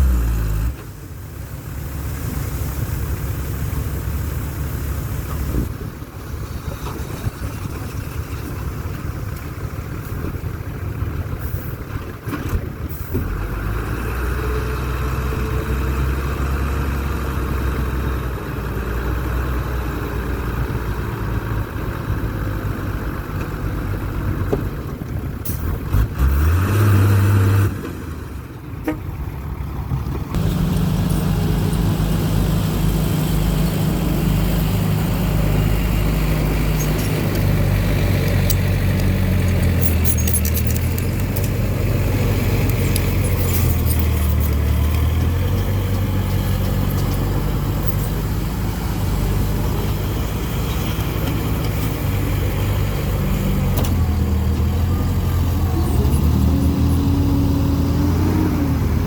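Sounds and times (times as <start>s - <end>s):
engine running steadily: 0.0s - 26.6s, 27.7s - 59.0s
heavy machinery engine revving: 25.2s - 28.5s, 29.2s - 59.0s.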